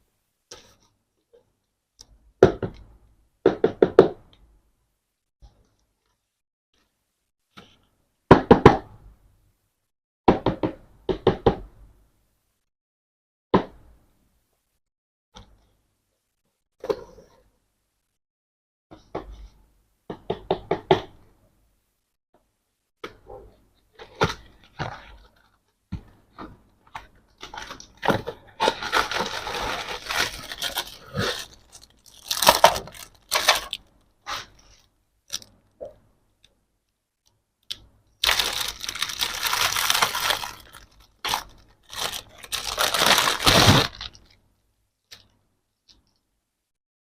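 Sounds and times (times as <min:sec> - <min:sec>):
packaging crinkling and tearing: 0:28.6 - 0:33.8, 0:38.2 - 0:44.3.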